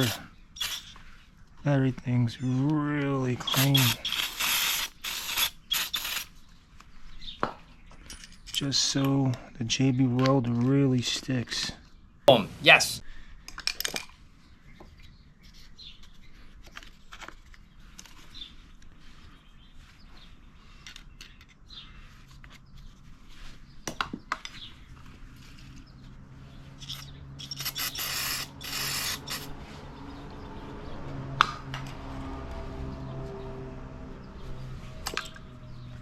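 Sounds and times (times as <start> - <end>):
aerosol spray hissing: 0.0 - 0.9, 3.5 - 6.3, 26.8 - 29.5.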